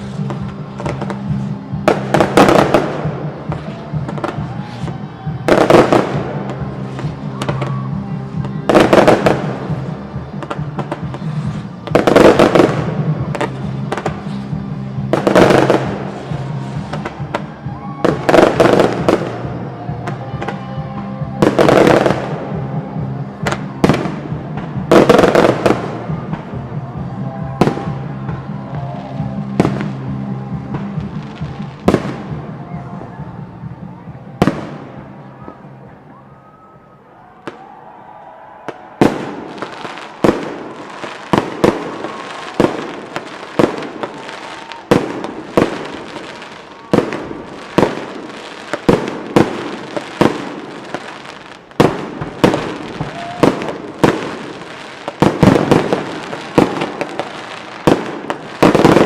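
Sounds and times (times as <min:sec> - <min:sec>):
sharp firework cracks: 0:00.0 - 0:20.6, 0:27.6 - 0:30.1, 0:37.4 - 0:59.0
music playing: 0:00.0 - 0:59.0.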